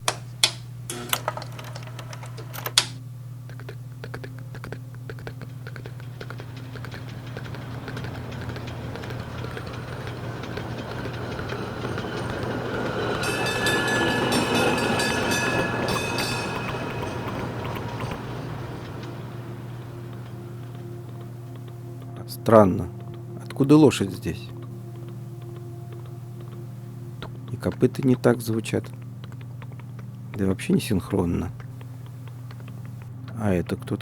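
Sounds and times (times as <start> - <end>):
rapid rattling clicks: 0.0 - 22.1
steady low hum: 0.0 - 34.0
passing vehicle rumble: 6.0 - 22.1
steady high tones: 6.4 - 28.7.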